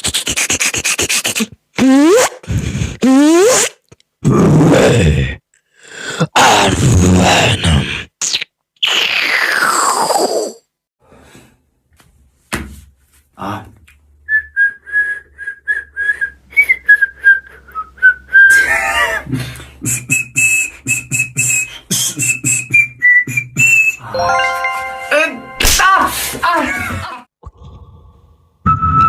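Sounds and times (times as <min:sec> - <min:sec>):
beatboxed rhythmic beat: 0:00.0 - 0:03.7, 0:19.3 - 0:24.0
beatboxed falling swoop: 0:19.8 - 0:24.1
whistle tone: 0:19.9 - 0:24.4, 0:28.6 - 0:29.0.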